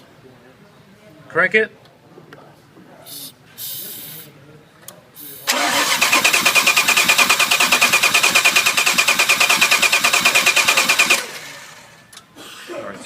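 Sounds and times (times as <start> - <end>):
starter motor cranking engine: 5.5 - 12.0.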